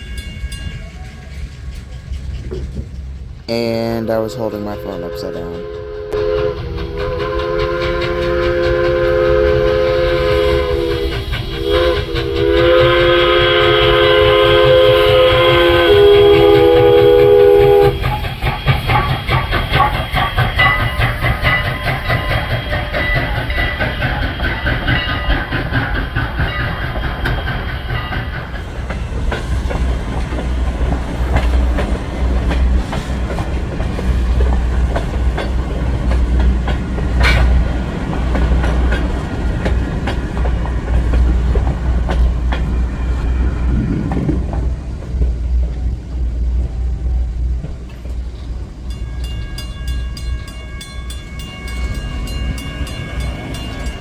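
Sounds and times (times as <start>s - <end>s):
train wheels clicking on rail joints: 0.0s - 4.2s, 5.4s - 54.0s
low train rumble: 0.0s - 54.0s
steam locomotive whistle: 4.5s - 28.4s.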